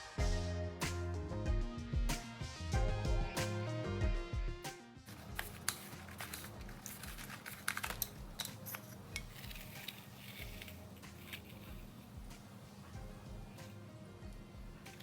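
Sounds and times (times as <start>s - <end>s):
metallic tool clicks and clinks: 5.3s - 12.1s.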